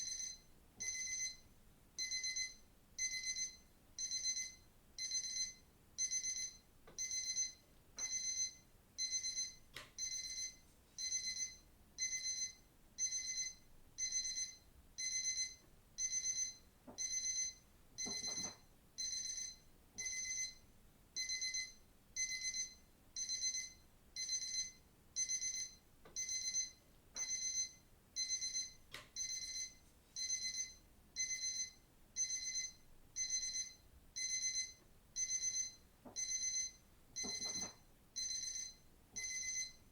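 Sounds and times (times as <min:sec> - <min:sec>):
digital watch alarm beeping: 0:00.0 - 0:01.4, 0:02.0 - 0:20.6, 0:21.2 - 0:39.8.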